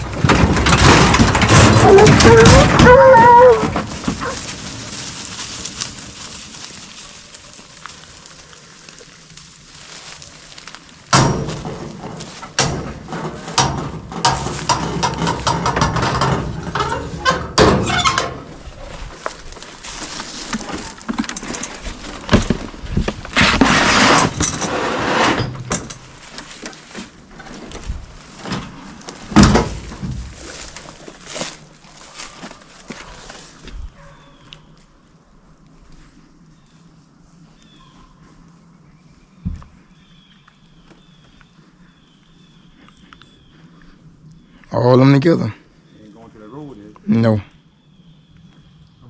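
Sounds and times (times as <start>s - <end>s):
knocks clatters and bangs: 0.0s - 6.5s, 11.1s - 31.6s.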